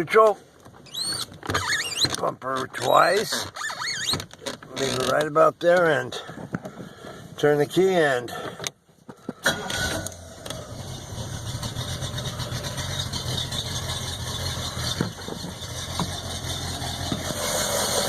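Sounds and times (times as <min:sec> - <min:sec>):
boat engine starting and idling: 0:09.4 - 0:18.0.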